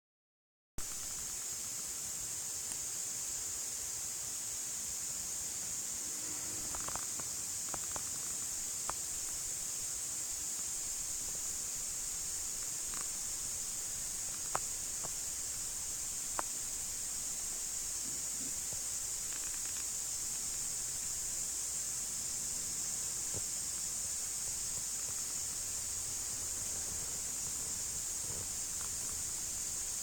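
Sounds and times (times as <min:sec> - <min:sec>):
high-pitched hiss: 0:00.8 - 0:30.0.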